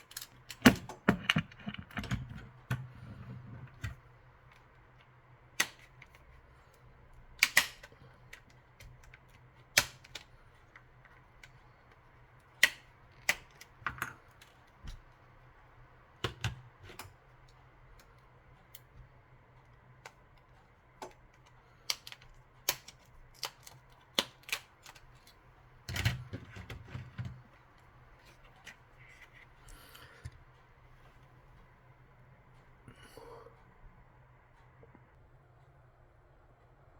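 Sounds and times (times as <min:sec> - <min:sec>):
clicks of plastic phone parts: 0:00.0 - 0:03.0, 0:21.0 - 0:27.4
faint low hum: 0:00.0 - 0:36.9.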